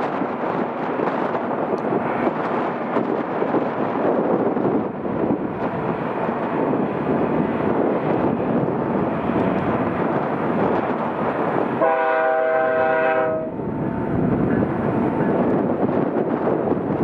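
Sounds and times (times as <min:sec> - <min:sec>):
diesel freight train rumble: 0:00.0 - 0:17.0
locomotive air horn blast: 0:11.8 - 0:13.6.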